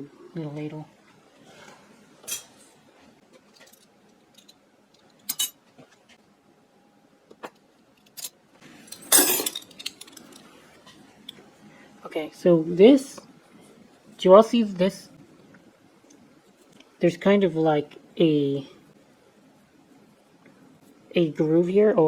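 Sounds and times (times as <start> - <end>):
metal flatware clinking: 2.2 - 2.6, 5.3 - 5.6, 8.9 - 10.4.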